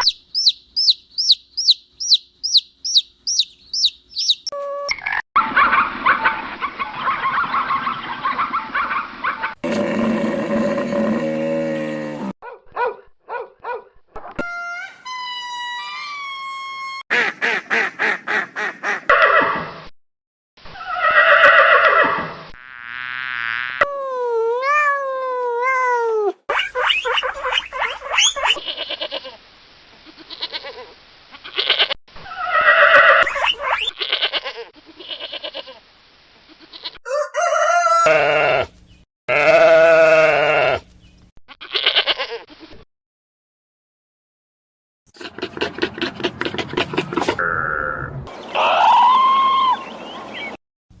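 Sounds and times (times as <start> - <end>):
farm animal calls: 0.0 - 9.6
goat bleating: 28.6 - 29.4, 30.0 - 32.0, 34.0 - 35.8, 36.5 - 37.0, 39.3 - 40.8, 41.5 - 42.8.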